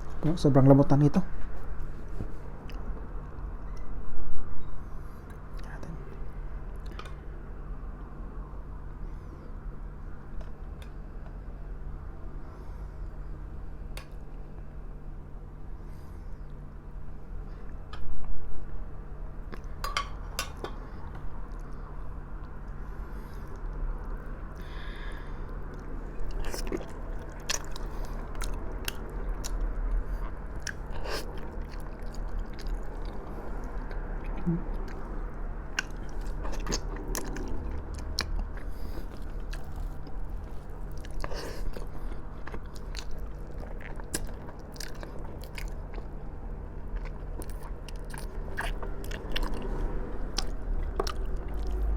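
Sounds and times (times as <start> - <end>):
steady low hum: 0.0 - 51.9
chewing and biting: 25.5 - 51.9.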